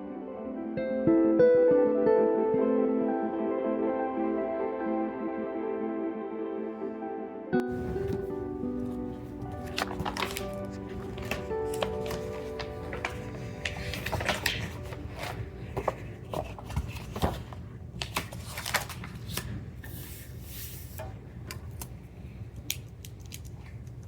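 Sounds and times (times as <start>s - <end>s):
objects rustling: 7.7s - 19.7s.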